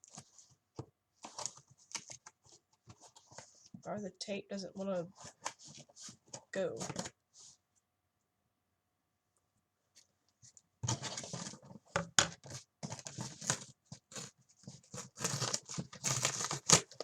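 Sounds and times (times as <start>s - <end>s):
packing tape ripping off cardboard: 12.4s - 17.0s.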